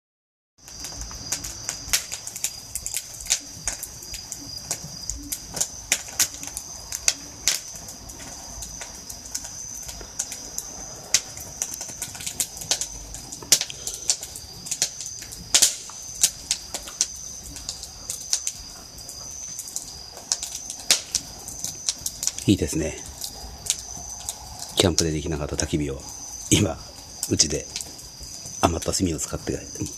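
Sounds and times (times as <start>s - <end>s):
charcoal fire crackling and popping: 0.6s - 29.9s.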